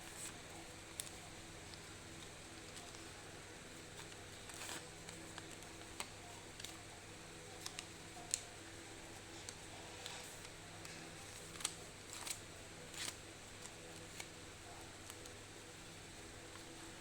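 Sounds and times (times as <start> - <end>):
faint steady hum: 0.0 - 17.0
paper rustling and creasing: 4.0 - 6.8, 9.2 - 14.4
faint clicks and taps: 4.0 - 12.4.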